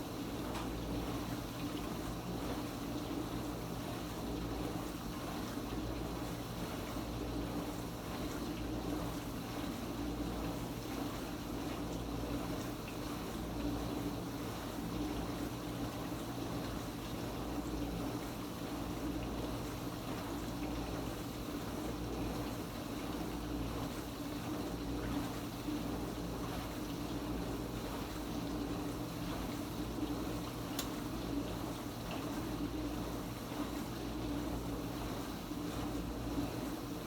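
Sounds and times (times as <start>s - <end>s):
dishwasher pump motor humming: 0.0s - 37.0s.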